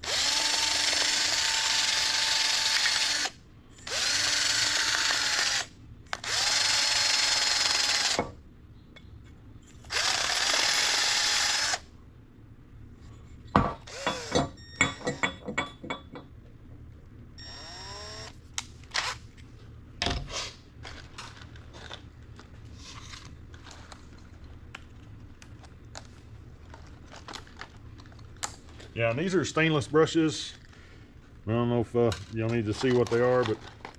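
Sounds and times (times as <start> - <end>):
drill whining: 0.0 - 8.3, 9.9 - 11.9, 13.9 - 15.2, 17.4 - 19.2
tools clicking and knocking: 13.6 - 16.3.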